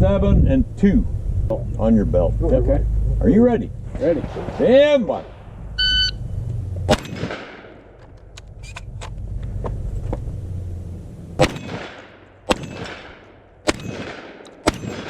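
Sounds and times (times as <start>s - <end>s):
shotgun blasts with echo: 4.0s - 5.7s, 6.9s - 8.0s, 11.4s - 15.0s.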